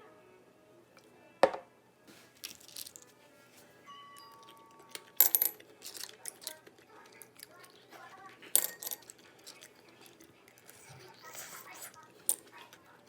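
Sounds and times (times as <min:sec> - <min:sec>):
metallic clinks of small objects: 0:02.4 - 0:03.1, 0:03.9 - 0:07.5, 0:08.5 - 0:10.7.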